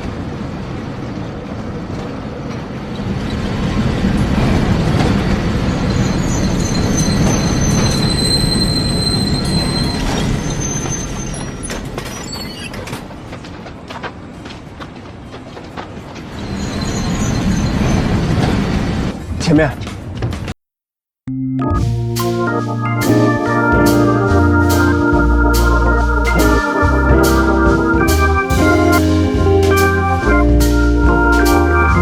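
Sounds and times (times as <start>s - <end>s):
high wheel squeal: 5.9s - 12.9s, 16.4s - 18.1s.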